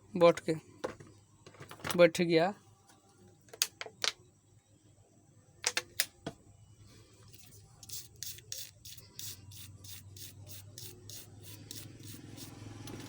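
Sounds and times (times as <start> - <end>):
short scratchy tool strokes: 7.9 - 13.0.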